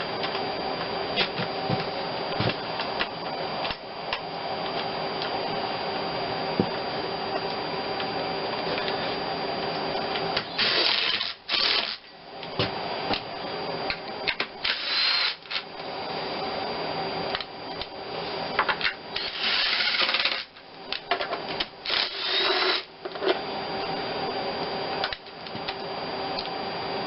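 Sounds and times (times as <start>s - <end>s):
steady background hum: 0.0s - 27.0s.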